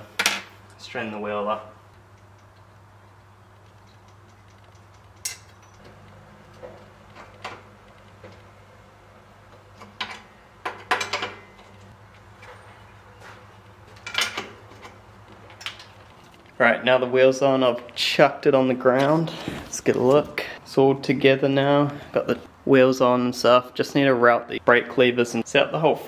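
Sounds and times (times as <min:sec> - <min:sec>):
metal clinks and knocks: 0:03.6 - 0:08.0, 0:09.9 - 0:12.6.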